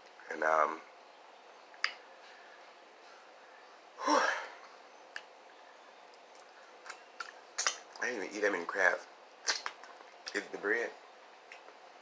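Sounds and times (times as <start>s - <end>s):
mouth click while eating: 1.7s - 2.0s, 5.1s - 5.3s.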